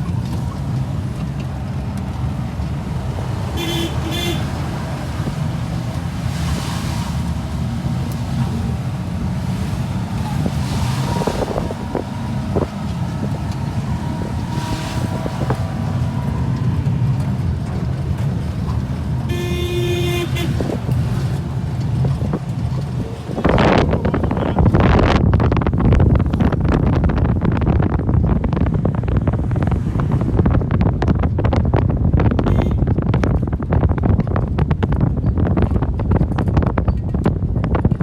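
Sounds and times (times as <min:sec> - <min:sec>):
road traffic: 0:00.0 - 0:38.0
vehicle engine rumble: 0:00.0 - 0:38.0
car horn honking: 0:03.1 - 0:05.9, 0:10.1 - 0:16.3, 0:19.2 - 0:20.9, 0:32.4 - 0:32.9.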